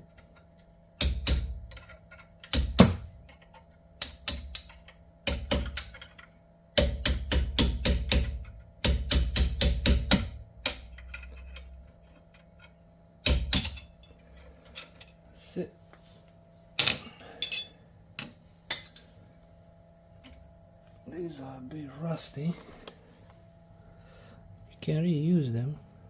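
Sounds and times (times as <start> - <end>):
hammer striking metal punch: 1.0 - 1.8, 2.4 - 3.1, 4.0 - 6.2, 6.8 - 11.2, 13.2 - 13.9.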